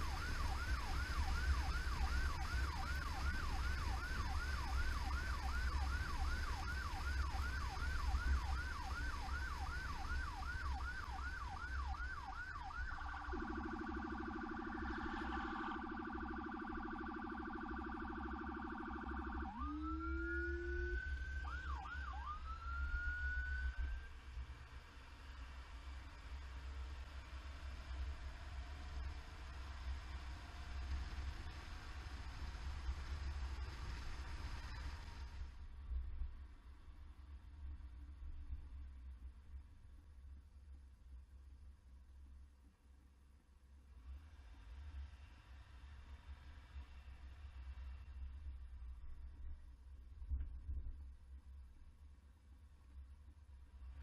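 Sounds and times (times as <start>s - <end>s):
emergency vehicle siren: 0.0s - 24.4s
low steady siren tone: 0.0s - 36.3s
low rumble of moving vehicle: 0.0s - 54.0s.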